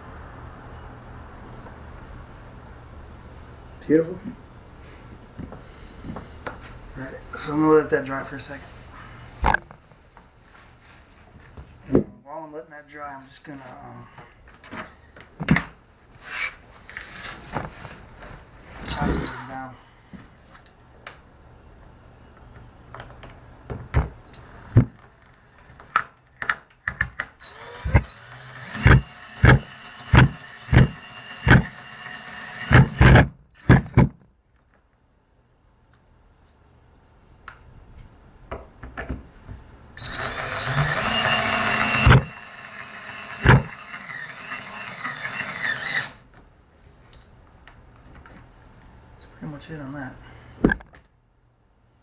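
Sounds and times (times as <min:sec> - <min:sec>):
power tool whirring: 0:27.2 - 0:34.0, 0:39.8 - 0:46.2.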